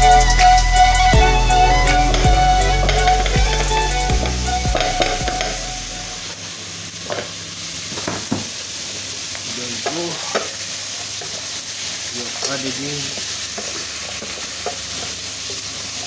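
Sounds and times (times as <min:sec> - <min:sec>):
background music with a beat: 0:00.0 - 0:06.3
meat sizzling in a pot: 0:04.8 - 0:16.0.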